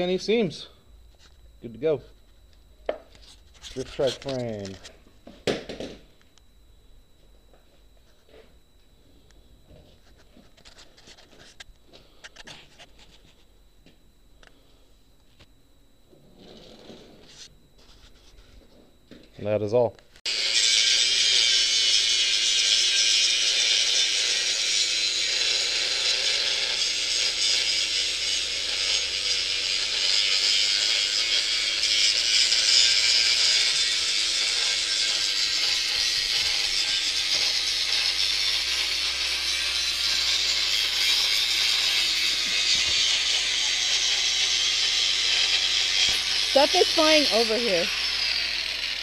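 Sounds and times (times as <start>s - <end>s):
power grinder grinding metal: 20.3s - 49.0s.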